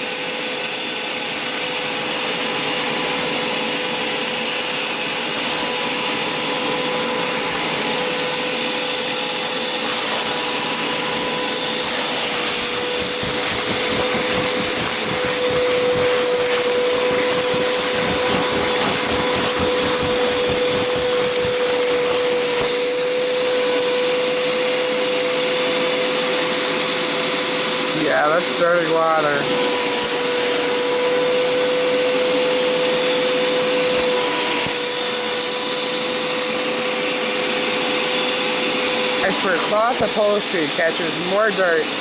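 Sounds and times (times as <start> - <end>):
carpet cleaner motor whine: 0.0 - 42.0
suction rushing: 9.7 - 23.8.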